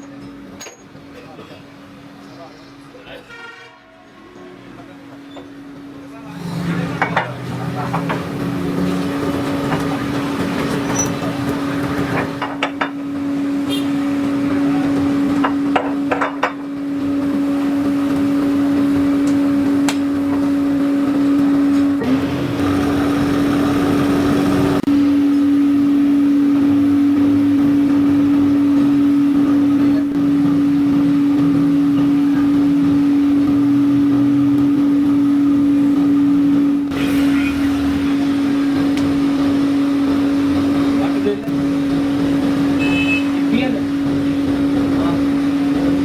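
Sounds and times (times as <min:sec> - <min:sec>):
factory machinery hum: 0:00.0 - 0:46.0
metal knocks and clinks: 0:00.2 - 0:01.0.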